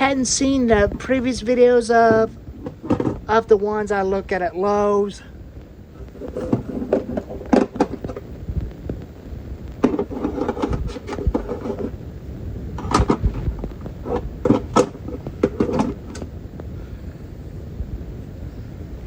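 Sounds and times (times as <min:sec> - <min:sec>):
knocks and clunks: 0:02.0 - 0:03.4, 0:06.2 - 0:08.2, 0:12.8 - 0:16.3.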